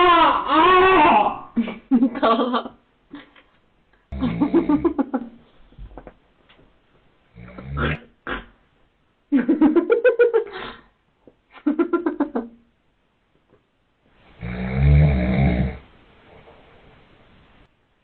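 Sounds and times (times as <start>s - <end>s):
man snoring: 7.4s - 8.0s, 14.4s - 15.8s.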